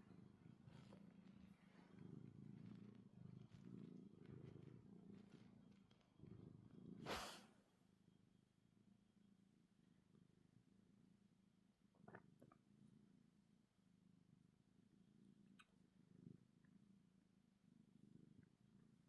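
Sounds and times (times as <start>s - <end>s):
cat purring: 0.0s - 7.4s, 16.0s - 17.0s, 17.6s - 19.0s.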